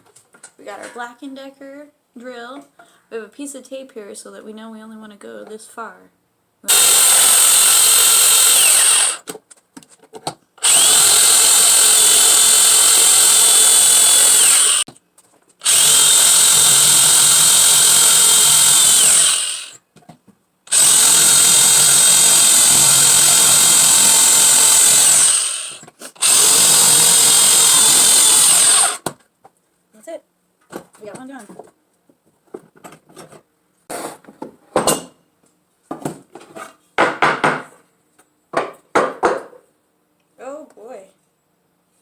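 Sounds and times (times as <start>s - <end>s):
drill boring into wood: 6.7s - 9.2s, 10.6s - 14.9s, 15.6s - 19.8s, 20.7s - 29.1s.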